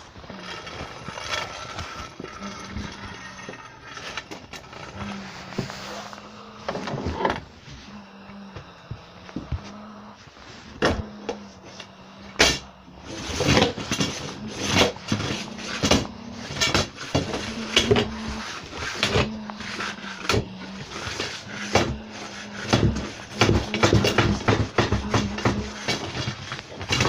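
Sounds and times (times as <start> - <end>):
faint low hum: 0.0 - 27.0
hard objects knocking and clattering: 12.4 - 27.0.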